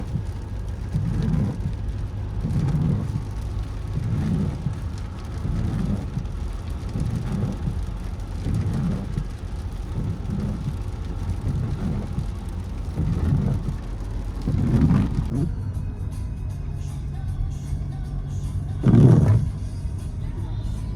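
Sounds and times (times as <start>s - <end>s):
windscreen wipers squeaking: 0.0s - 15.5s, 18.6s - 19.6s
steady car noise: 0.0s - 20.9s.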